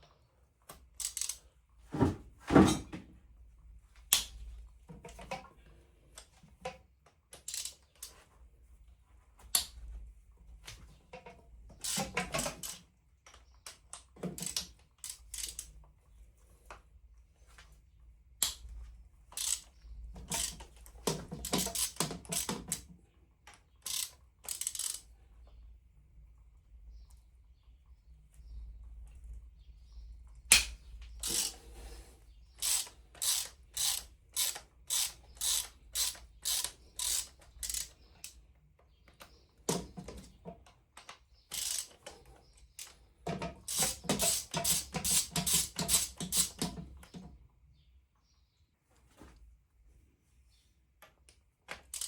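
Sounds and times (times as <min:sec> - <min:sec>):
hand tools and screws clinking: 0:32.6 - 0:38.0, 0:41.5 - 0:42.2, 0:42.8 - 0:46.8.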